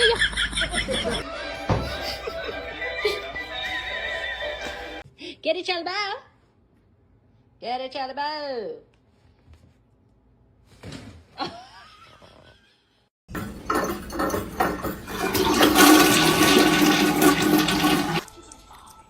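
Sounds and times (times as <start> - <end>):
toilet flushing: 13.3 - 18.3.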